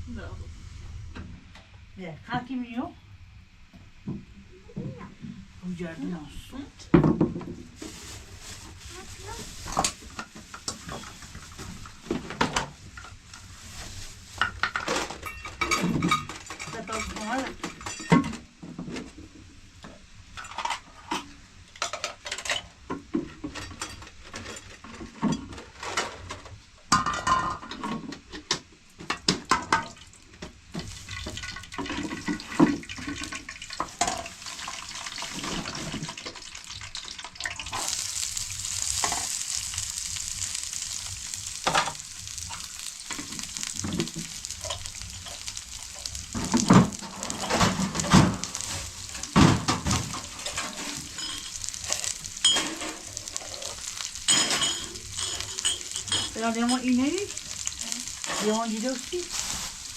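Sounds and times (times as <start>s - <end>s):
frying sizzle: 3.4s - 59.9s
pots and utensils clinking: 9.5s - 19.1s, 20.3s - 30.0s, 30.8s - 59.9s
stirring knocks: 37.6s - 59.8s.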